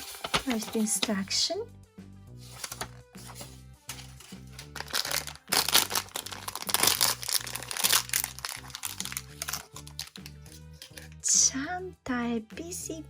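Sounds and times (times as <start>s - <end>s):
packaging crinkling and rustling: 0.0s - 1.1s, 2.5s - 11.2s
background music with bass line: 0.0s - 13.0s.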